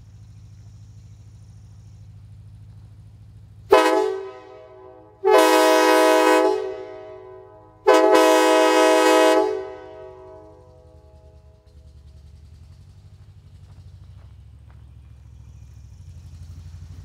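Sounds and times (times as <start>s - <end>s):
train horn blasts: 3.7s - 11.4s.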